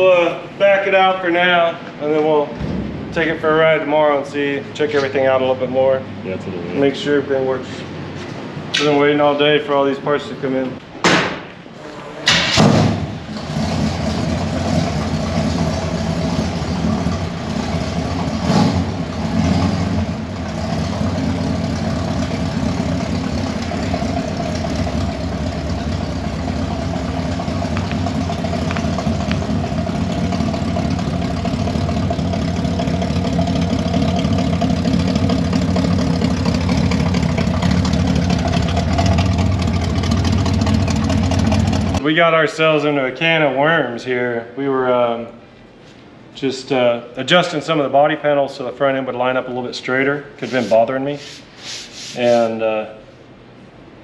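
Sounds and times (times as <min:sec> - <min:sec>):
truck engine starting and idling: 0:00.0 - 0:09.9, 0:12.2 - 0:42.3, 0:53.3 - 0:54.0
engine knock: 0:20.4 - 0:42.0.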